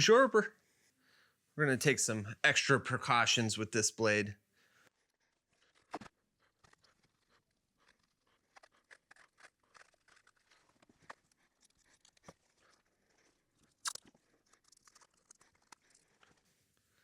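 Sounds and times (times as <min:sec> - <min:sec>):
wrapping crinkling and clicking: 0:05.2 - 0:16.5.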